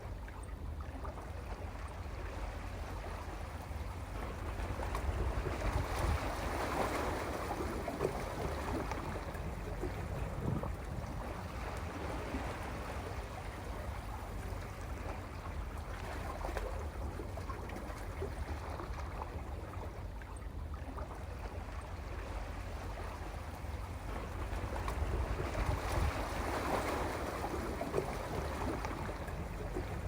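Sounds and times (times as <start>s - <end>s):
wind rumble on microphone: 4.1s - 17.6s, 24.0s - 30.0s.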